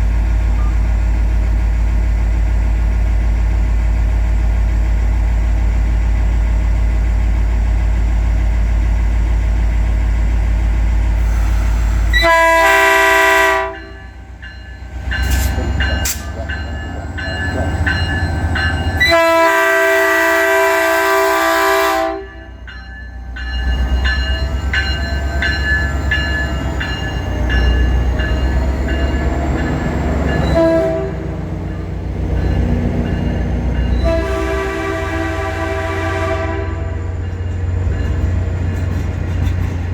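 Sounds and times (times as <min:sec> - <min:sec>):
train rumbling past: 0:00.0 - 0:39.9
clicking rail noise: 0:00.2 - 0:01.1, 0:13.7 - 0:19.2, 0:37.0 - 0:39.9
train air horn blasts: 0:11.2 - 0:14.2, 0:19.0 - 0:22.5, 0:30.5 - 0:31.5, 0:34.0 - 0:37.2.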